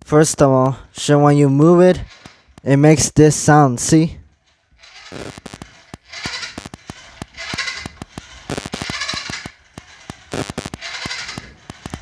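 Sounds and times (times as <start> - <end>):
toy truck wheels clicking rattle: 4.8 - 12.0.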